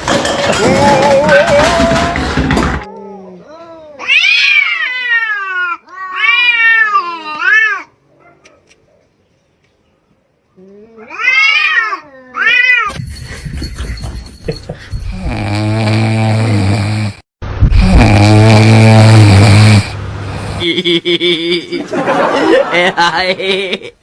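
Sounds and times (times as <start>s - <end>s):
cat yowling: 2.8s - 8.0s, 10.9s - 12.9s.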